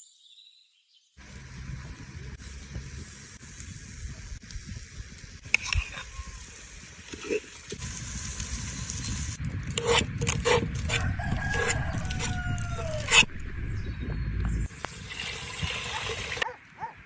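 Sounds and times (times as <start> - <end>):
steady low rumble: 8.0 - 14.7
rooster crowing: 10.9 - 13.3.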